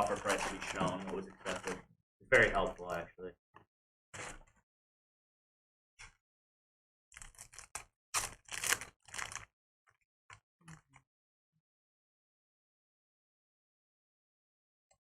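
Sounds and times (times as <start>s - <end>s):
cards rustling and scraping: 0.0s - 1.8s.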